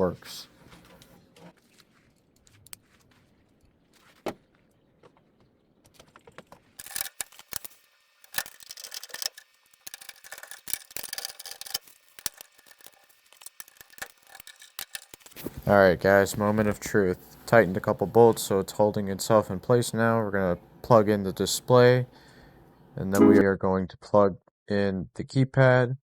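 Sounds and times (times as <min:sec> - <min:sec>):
metallic clicks and rattles: 0:06.8 - 0:15.4.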